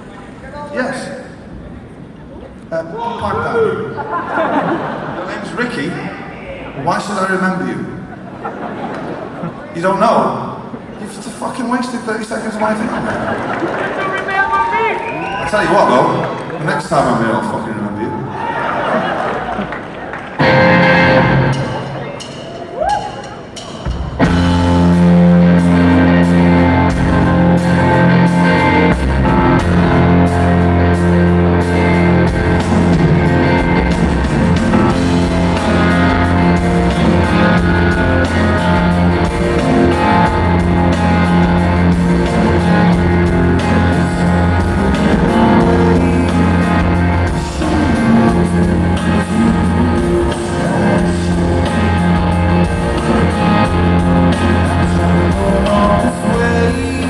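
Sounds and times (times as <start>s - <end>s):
live rock band playing: 20.4s - 57.0s.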